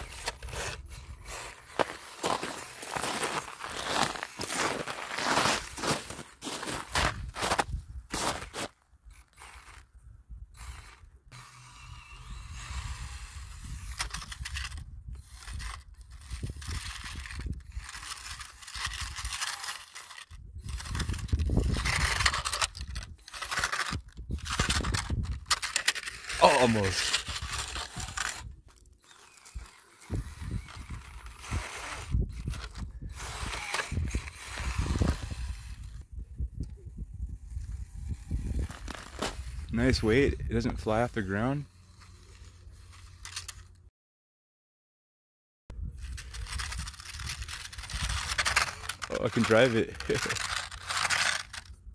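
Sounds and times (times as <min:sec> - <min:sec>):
tyres crackling on ground: 0:00.0 - 0:09.8, 0:14.0 - 0:35.9, 0:38.2 - 0:41.6, 0:46.0 - 0:51.8
toy truck motor whirring: 0:00.0 - 0:36.1, 0:37.3 - 0:43.8, 0:46.0 - 0:51.9.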